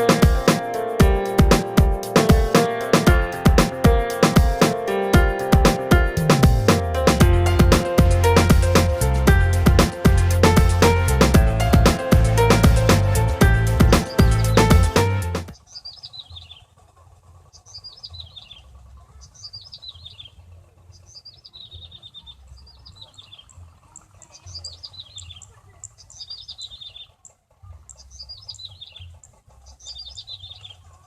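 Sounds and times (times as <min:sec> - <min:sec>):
low rumble: 0:06.2 - 0:15.5
small bird singing: 0:13.4 - 0:16.7, 0:17.5 - 0:31.0.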